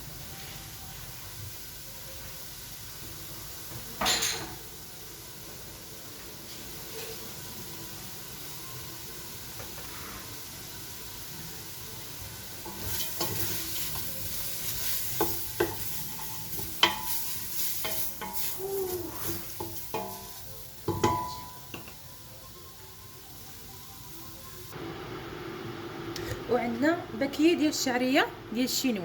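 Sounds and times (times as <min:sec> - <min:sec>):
vegetables sizzling in butter: 0:00.0 - 0:27.0
spoon knocking against pot: 0:20.9 - 0:22.0.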